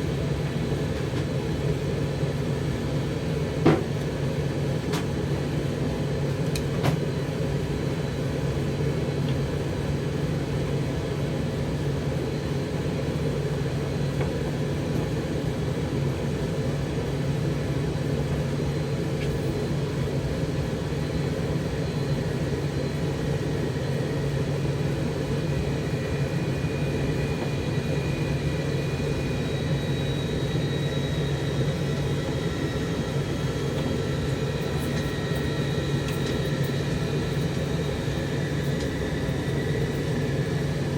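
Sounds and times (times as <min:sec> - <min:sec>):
tumble dryer humming: 0:23.1 - 0:40.9.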